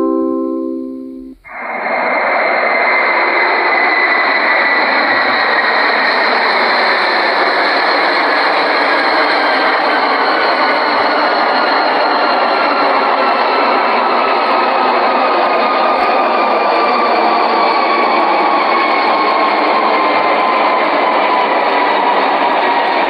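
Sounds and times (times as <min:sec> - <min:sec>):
chime melody: 0:00.0 - 0:01.4.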